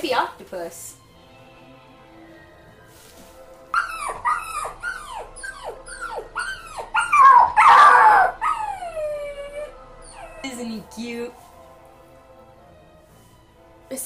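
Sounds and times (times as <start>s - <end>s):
background music: 0.0s - 14.0s
dog yelping: 3.7s - 10.8s.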